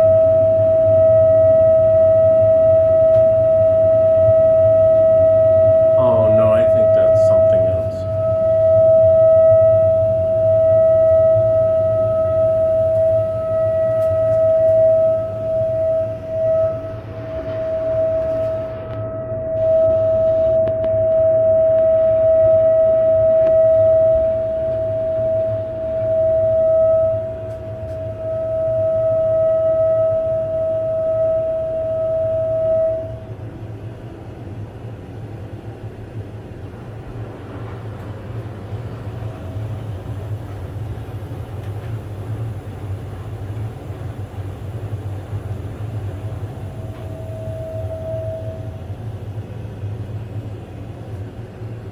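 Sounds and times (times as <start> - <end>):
low drone: 0.0 - 33.4, 45.4 - 50.1
water pipes humming: 0.0 - 33.8, 36.7 - 51.9
low rumble: 0.1 - 33.4.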